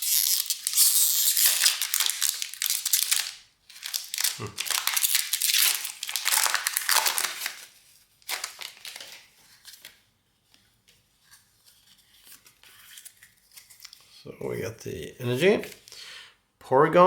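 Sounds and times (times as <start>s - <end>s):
foil wrapper crinkling: 0.0s - 10.0s
cards rustling: 0.0s - 10.1s, 10.9s - 14.2s.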